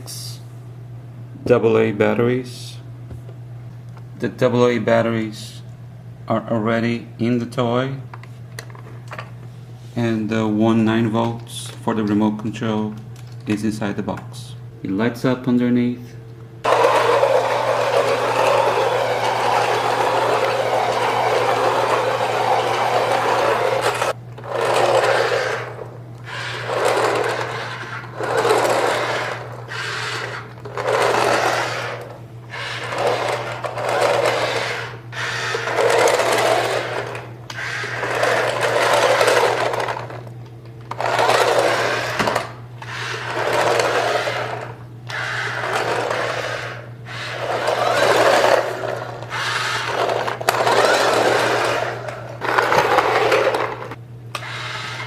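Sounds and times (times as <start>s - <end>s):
toy electric motor whirring: 16.6s - 40.2s, 40.9s - 55.0s.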